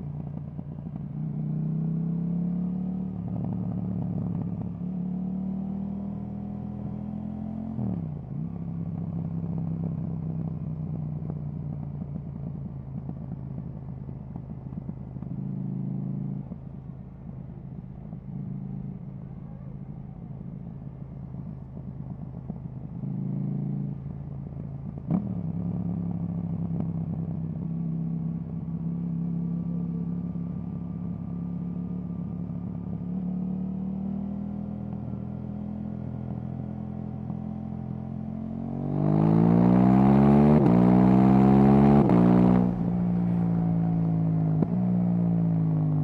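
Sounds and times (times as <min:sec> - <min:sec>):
motorcycle engine revving: 0:28.6 - 0:46.0.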